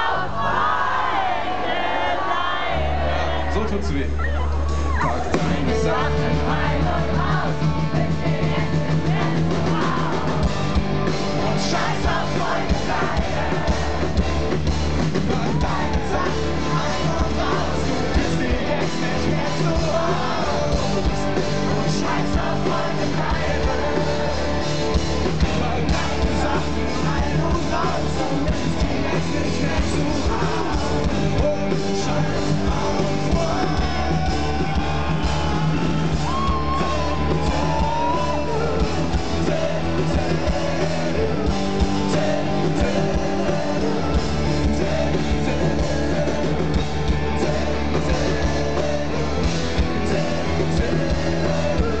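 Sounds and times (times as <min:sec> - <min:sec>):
live rock band playing: 0:04.1 - 0:52.0
person singing or shouting: 0:32.3 - 0:41.4.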